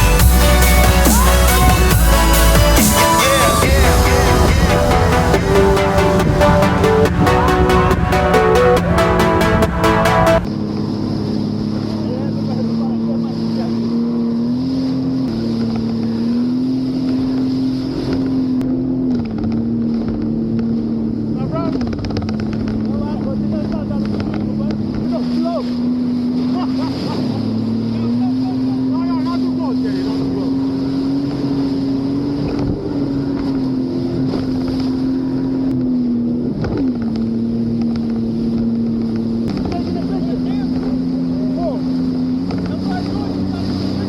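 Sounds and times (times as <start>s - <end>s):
jet ski engine running: 0.0s - 44.0s
water and wind rushing: 0.0s - 44.0s.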